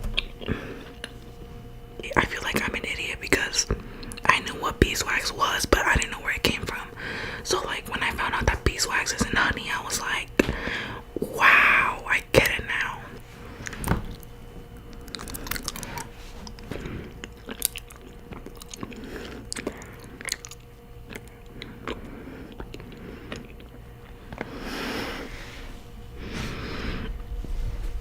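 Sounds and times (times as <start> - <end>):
chewing and crunching: 0.0 - 2.1, 13.4 - 24.7
sticky mouth clicks: 17.2 - 24.5.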